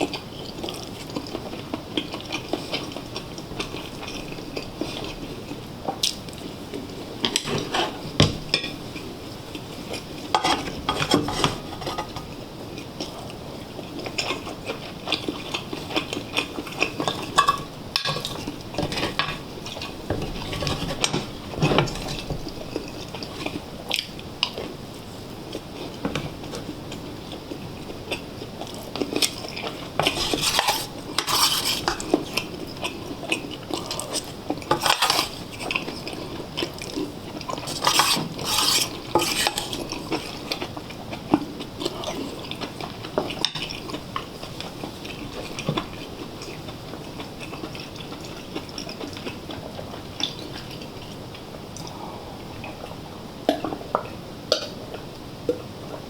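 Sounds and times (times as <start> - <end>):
cutlery clinking and scraping dishes: 10.3 - 12.2, 17.0 - 19.4, 30.0 - 32.2, 33.9 - 36.1, 37.6 - 40.3.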